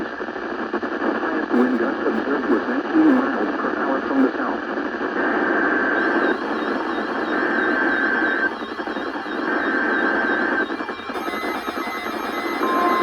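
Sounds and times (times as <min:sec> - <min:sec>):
radio static hiss: 0:00.9 - 0:13.0
digital data tone bursts: 0:06.0 - 0:13.0.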